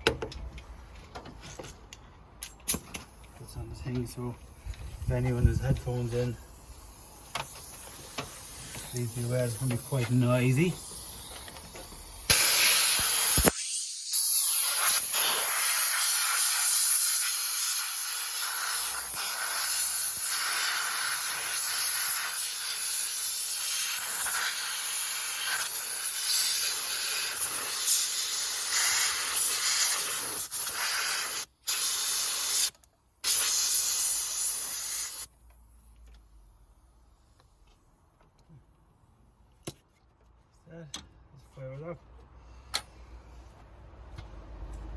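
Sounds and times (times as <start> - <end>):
air blow gun hissing: 4.5 - 35.3.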